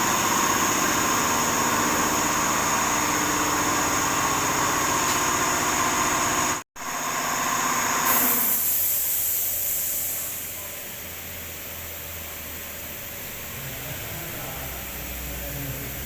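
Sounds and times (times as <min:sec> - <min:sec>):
high hiss: 0:08.0 - 0:10.8.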